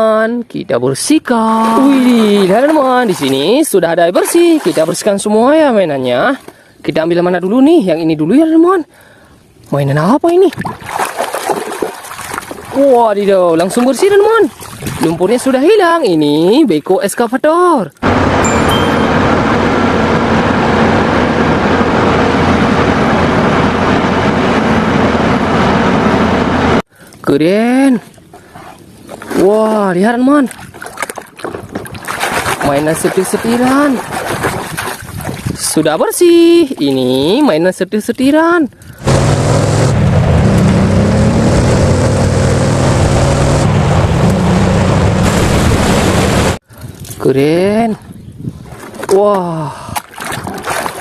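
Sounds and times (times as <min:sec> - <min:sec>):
heavy engine-like noise: 0:18.0 - 0:26.8, 0:39.0 - 0:46.6.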